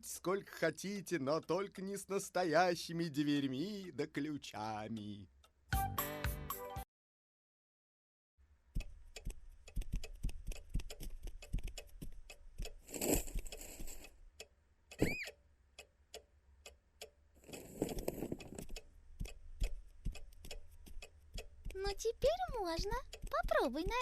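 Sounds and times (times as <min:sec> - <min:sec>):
light ticks and taps: 0:00.9 - 0:02.3, 0:08.8 - 0:24.0
rustling: 0:11.0 - 0:14.1
rising and falling whistle: 0:15.0 - 0:15.3.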